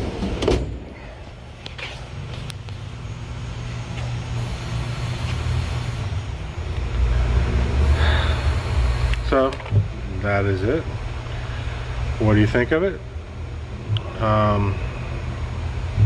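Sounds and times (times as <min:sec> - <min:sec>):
low rumble: 0:06.1 - 0:12.1.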